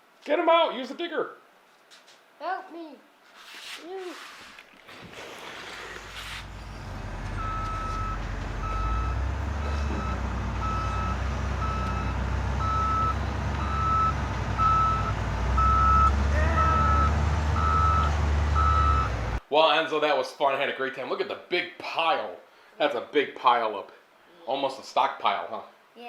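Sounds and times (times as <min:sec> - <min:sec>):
reversing beep: 0:07.3 - 0:19.2.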